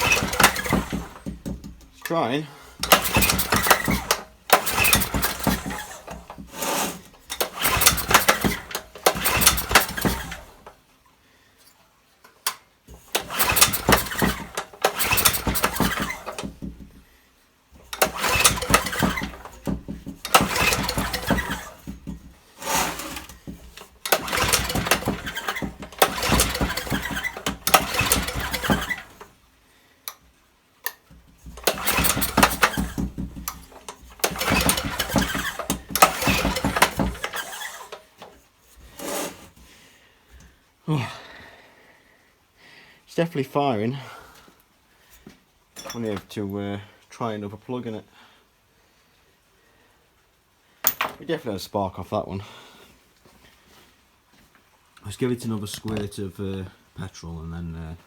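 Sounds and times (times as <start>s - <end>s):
small engine being pull-started: 0.0s - 10.8s, 12.4s - 16.9s, 17.7s - 29.4s, 30.8s - 39.6s.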